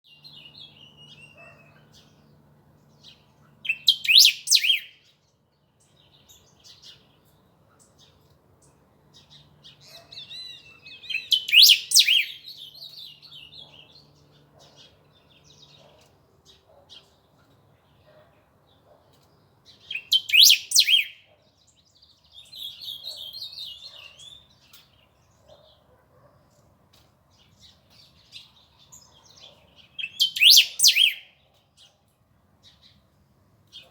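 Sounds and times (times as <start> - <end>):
soft bird twittering: 3.0 - 5.1, 5.9 - 16.1, 19.2 - 21.2, 27.4 - 32.0
bird chirping rapidly: 3.1 - 5.1, 9.8 - 15.8, 19.7 - 21.2, 22.3 - 24.8, 28.0 - 31.3.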